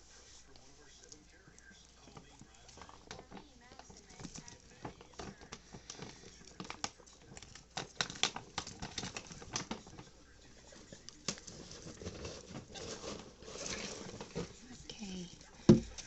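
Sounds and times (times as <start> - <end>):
dry hay rustling and crackling: 0.0 - 7.2.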